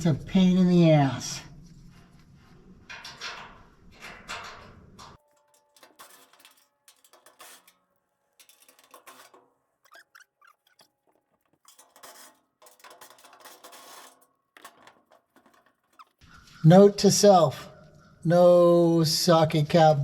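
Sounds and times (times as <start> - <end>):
hand tools clinking on metal: 2.9 - 10.7.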